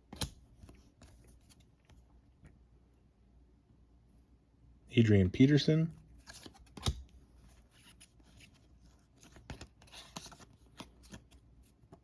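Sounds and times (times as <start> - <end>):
trading cards scraping and rustling: 6.1 - 12.0.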